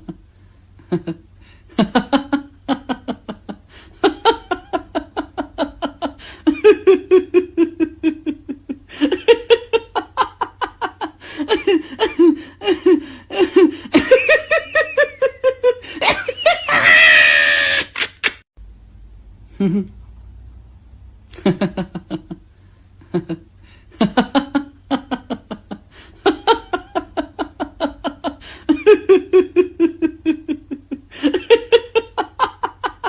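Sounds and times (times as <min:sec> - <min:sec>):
people laughing: 0:01.8 - 0:18.4
shrieking laugh: 0:01.8 - 0:18.4, 0:24.0 - 0:33.0.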